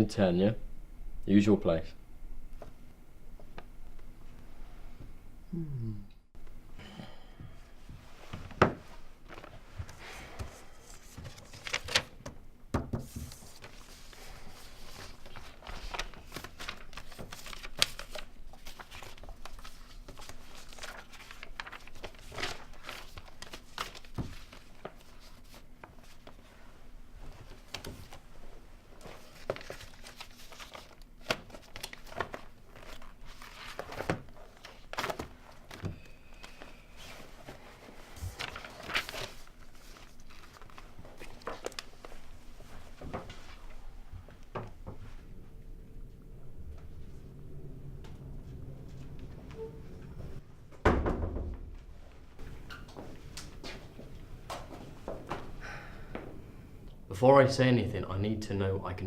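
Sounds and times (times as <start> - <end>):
crinkling rustling handling noises: 7.8 - 12.4, 13.0 - 45.1.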